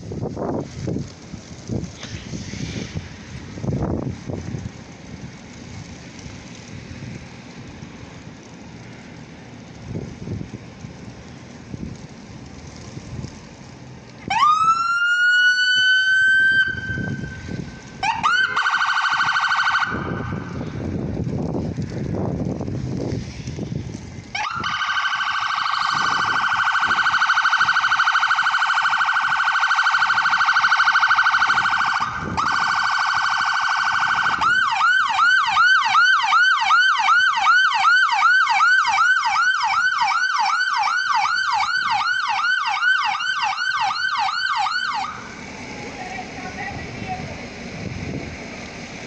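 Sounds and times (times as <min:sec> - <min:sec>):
electronic siren warbling: 0:24.4 - 0:36.4.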